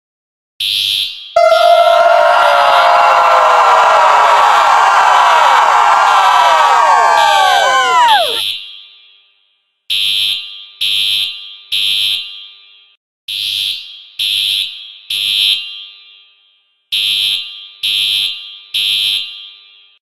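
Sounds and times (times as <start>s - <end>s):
fire alarm high-pitched beeps: 0.6s - 1.6s, 8.4s - 12.6s, 13.3s - 16.2s, 17.0s - 19.7s.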